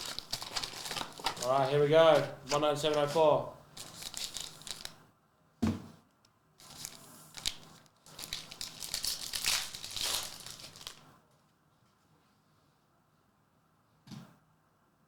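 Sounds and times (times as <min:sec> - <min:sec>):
foil wrappers crinkling and tearing: 0:00.0 - 0:05.0, 0:06.6 - 0:11.1.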